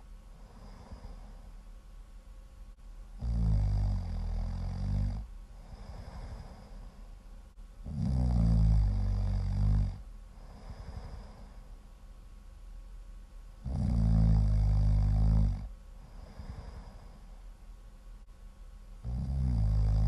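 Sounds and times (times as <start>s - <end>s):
soft breathing: 0.0s - 1.8s, 5.2s - 7.6s, 8.9s - 12.0s, 15.9s - 18.3s
loud snoring: 3.2s - 6.8s, 7.8s - 11.5s, 13.6s - 17.2s, 19.0s - 20.0s.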